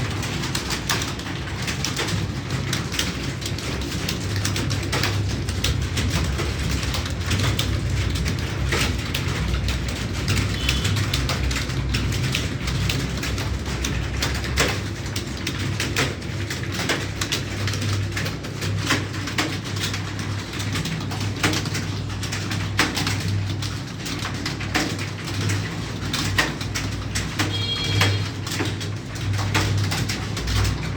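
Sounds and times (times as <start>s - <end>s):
keyboard typing: 26.4s - 30.1s.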